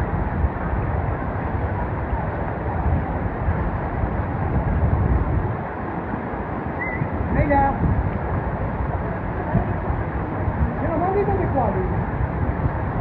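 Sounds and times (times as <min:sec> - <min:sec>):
mountain stream rushing: 0:00.0 - 0:13.0.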